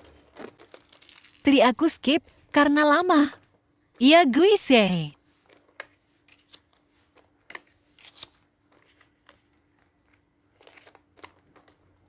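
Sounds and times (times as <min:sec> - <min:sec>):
sticker sheets rustling: 0:00.0 - 0:02.4.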